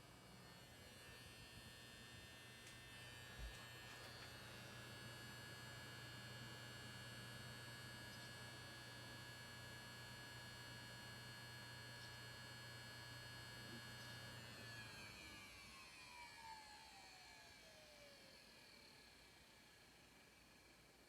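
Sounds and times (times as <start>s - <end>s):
computer low electrical hum: 0.0s - 16.8s.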